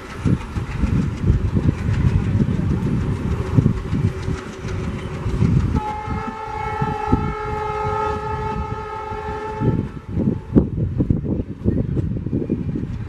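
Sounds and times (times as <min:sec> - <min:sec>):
rhythmic thumping of moving train: 0:00.0 - 0:13.0
locomotive horn blast: 0:05.8 - 0:10.6.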